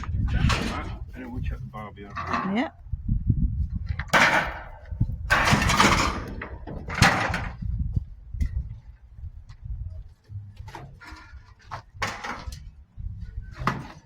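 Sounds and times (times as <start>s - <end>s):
metal barbecue clattering and scraping: 0.0s - 2.8s, 3.8s - 7.8s, 10.3s - 14.0s
low rumble: 0.0s - 10.8s.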